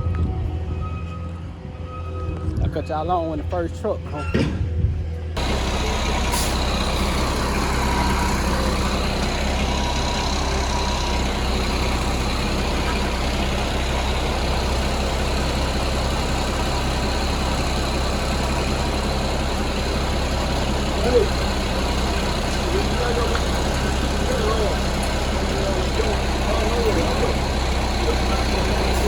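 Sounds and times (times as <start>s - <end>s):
diesel engine idling: 5.0s - 29.0s.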